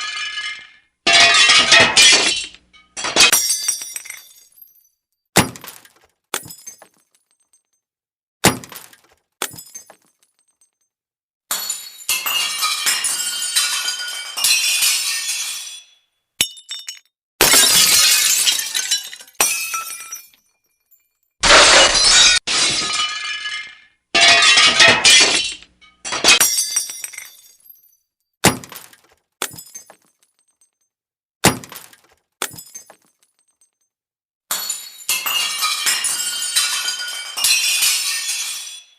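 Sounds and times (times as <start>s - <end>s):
glass smashing: 0.0s - 7.7s, 8.4s - 10.8s, 11.5s - 30.8s, 31.4s - 33.9s, 34.5s - 38.9s
tinkling glass shards: 34.5s - 38.9s.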